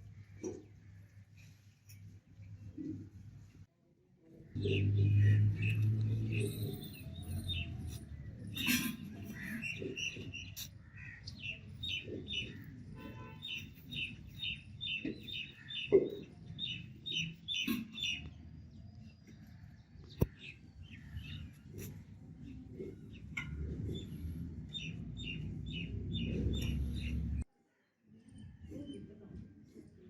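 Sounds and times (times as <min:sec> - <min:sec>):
small birds chirping: 0:04.6 - 0:27.5.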